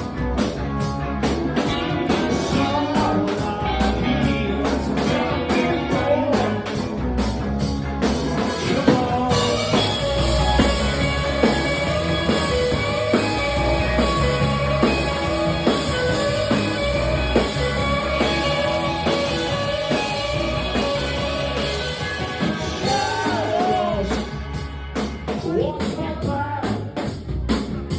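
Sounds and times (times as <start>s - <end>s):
drum kit beat: 0.0s - 27.9s
electric guitar: 0.0s - 27.9s
person singing: 1.8s - 6.9s, 22.8s - 24.2s.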